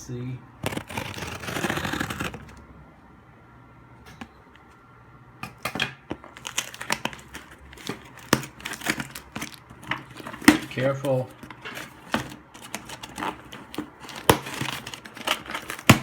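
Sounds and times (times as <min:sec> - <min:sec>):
packaging crinkling and rustling: 0:00.6 - 0:02.6, 0:06.0 - 0:16.0
scissors cutting packaging: 0:00.6 - 0:02.6, 0:06.2 - 0:16.0.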